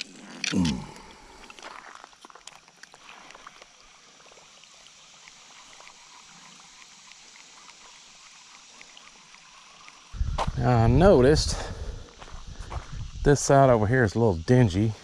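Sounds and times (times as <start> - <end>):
small ticks and light splashes: 0.0 - 10.2, 12.0 - 13.6
creek water trickling: 0.0 - 15.0.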